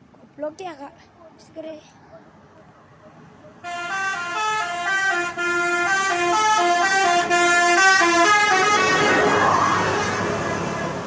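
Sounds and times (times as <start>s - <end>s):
multi-tone bus horn tune: 3.6s - 11.0s
broad rush of noise: 8.4s - 11.0s.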